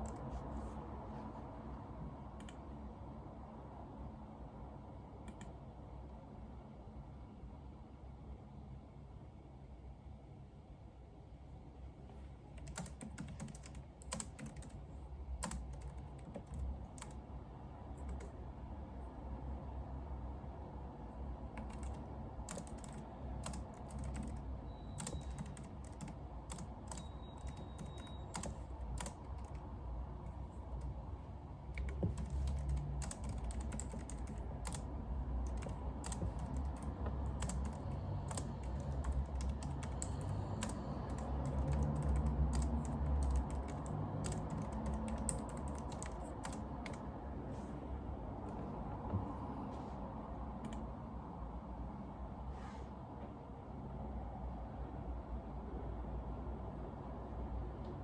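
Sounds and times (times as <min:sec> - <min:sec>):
low background hum: 0:00.0 - 0:58.0
keyboard keystroke clicks: 0:25.0 - 0:29.6, 0:35.5 - 0:47.0.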